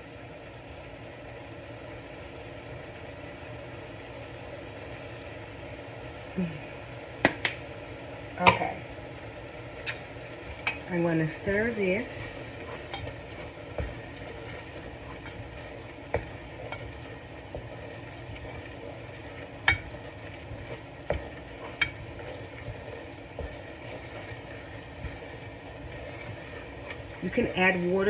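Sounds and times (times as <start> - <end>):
meat sizzling in a pan: 0.0 - 28.0
utensil clicking against pan: 9.8 - 10.9, 12.6 - 27.3.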